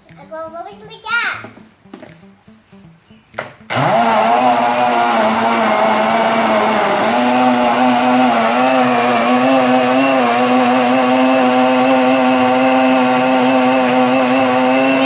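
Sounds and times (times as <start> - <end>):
blender motor running: 3.7 - 15.0.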